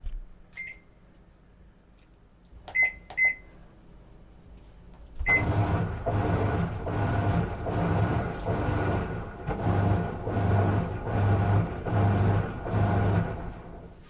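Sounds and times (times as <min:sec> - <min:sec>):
washing machine button beeps: 0:00.6 - 0:00.8, 0:02.7 - 0:03.5, 0:05.2 - 0:05.6
washing machine humming: 0:05.2 - 0:14.0.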